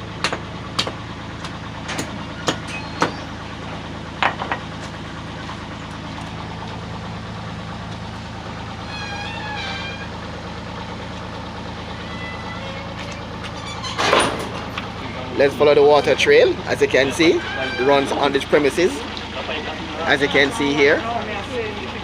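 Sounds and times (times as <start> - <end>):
heavy vehicle engine idling: 0.0 - 22.0
sharp knocks: 0.2 - 3.2.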